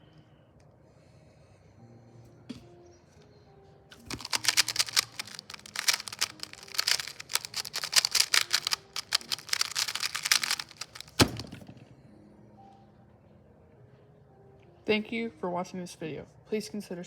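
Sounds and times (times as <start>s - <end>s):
speed cube clicking: 4.0s - 11.5s.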